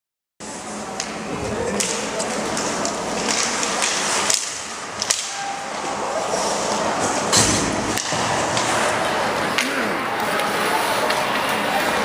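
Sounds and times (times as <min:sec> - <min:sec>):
arena noise: 0:00.4 - 0:12.0
hockey sticks and puck clacking: 0:00.6 - 0:12.0
heavy thud: 0:07.3 - 0:08.4.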